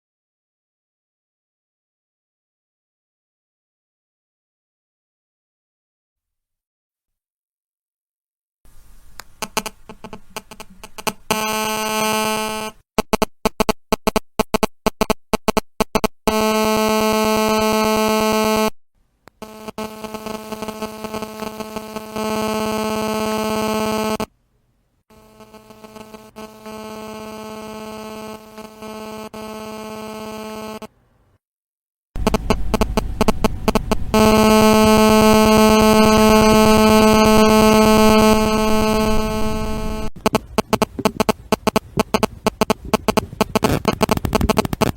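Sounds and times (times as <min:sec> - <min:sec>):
mobile phone interference buzz: 0:09.3 - 0:24.3, 0:25.1 - 0:31.0, 0:32.2 - 0:44.9.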